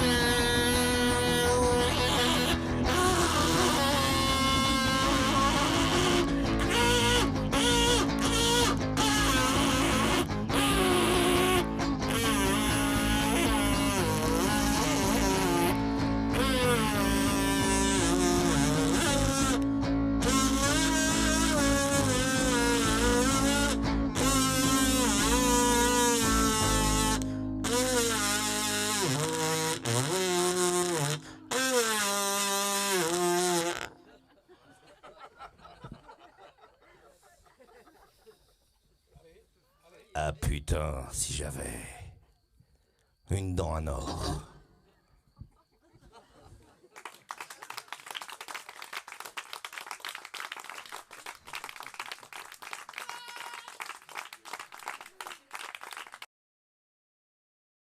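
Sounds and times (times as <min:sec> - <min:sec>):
short high-pitched call: 0:00.0 - 0:19.6, 0:20.2 - 0:33.9
buzzy lead synth melody: 0:00.0 - 0:33.8
audience applauding: 0:46.8 - 0:56.3.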